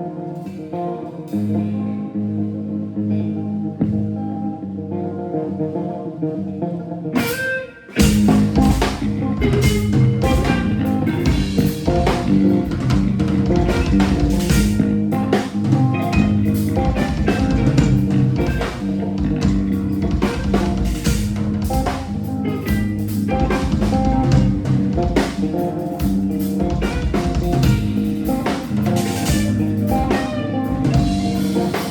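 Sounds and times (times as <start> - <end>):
drums: 0.0 - 2.2, 3.4 - 4.5, 7.2 - 31.9
guitar playing: 0.0 - 31.9
band music: 7.1 - 31.9.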